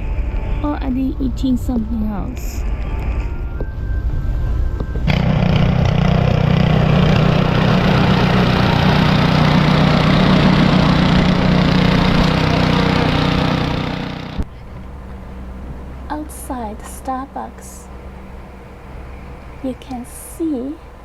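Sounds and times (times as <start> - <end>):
motor vehicle engine running: 4.0 - 21.0.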